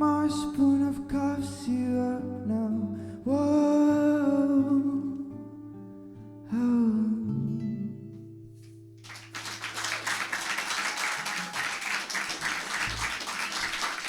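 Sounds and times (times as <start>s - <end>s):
audience applauding: 9.0s - 14.0s.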